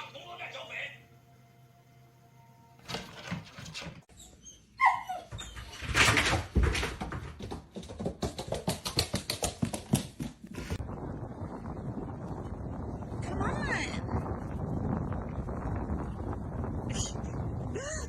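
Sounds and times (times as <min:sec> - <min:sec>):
dog whimpering: 0:04.2 - 0:05.6.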